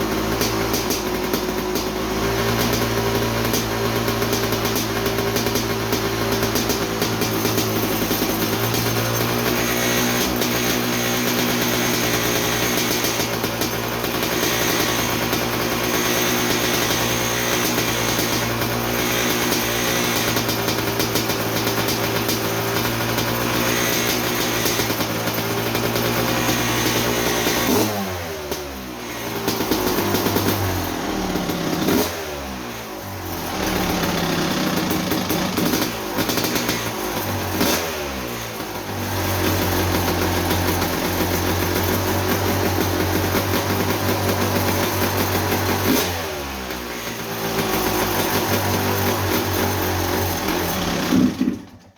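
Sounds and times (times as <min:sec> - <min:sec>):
two-stroke engine revving: 0:00.0 - 0:51.9.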